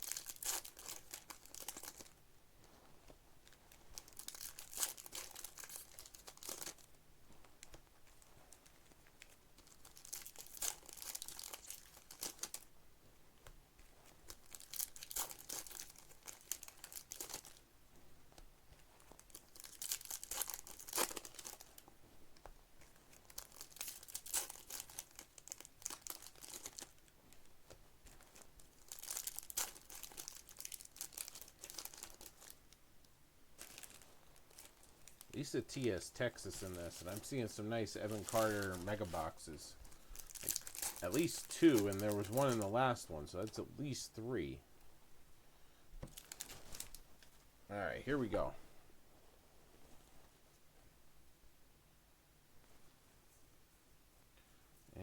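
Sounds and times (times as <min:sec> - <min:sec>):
card pack wrappers crinkling and tearing: 0:00.0 - 0:02.2, 0:03.4 - 0:07.0, 0:07.6 - 0:12.7, 0:13.9 - 0:17.6, 0:18.8 - 0:32.7, 0:33.6 - 0:44.0, 0:46.0 - 0:47.4.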